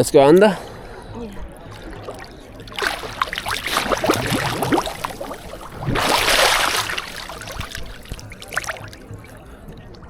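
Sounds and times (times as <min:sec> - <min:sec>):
water sloshing and bubbling: 0:01.2 - 0:10.0
rush of water: 0:01.7 - 0:09.3
rising bubble chirps: 0:03.2 - 0:09.0.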